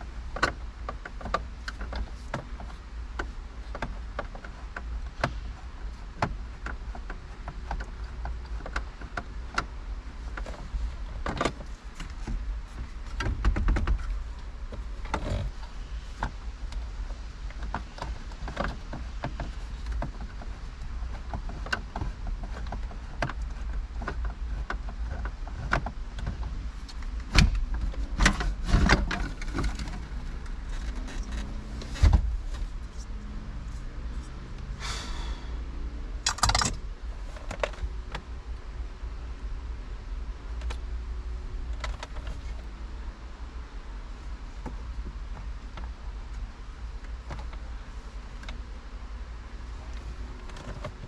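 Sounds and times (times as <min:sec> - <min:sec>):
steady low hum: 0:00.0 - 0:51.0
plastic trim clicks and rattles: 0:36.2 - 0:36.8.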